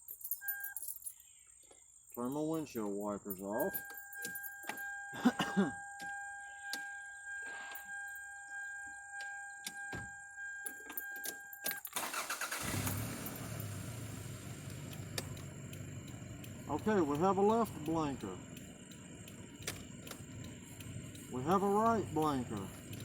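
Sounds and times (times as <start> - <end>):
electronic warning tone: 3.5 - 11.8
starter cranking: 11.9 - 23.0
car engine idling: 12.0 - 23.0.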